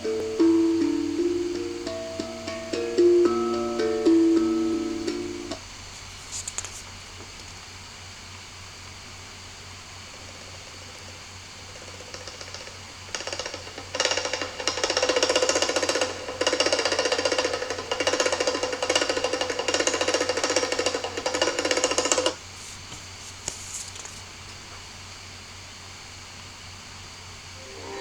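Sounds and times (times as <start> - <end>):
classical string instrument strokes: 0.0 - 5.6, 27.6 - 28.0.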